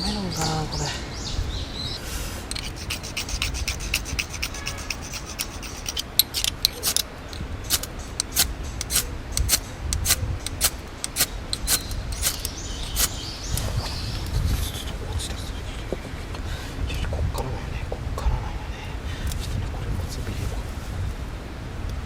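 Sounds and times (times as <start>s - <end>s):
fire-starter rod scraping: 2.4s - 14.1s.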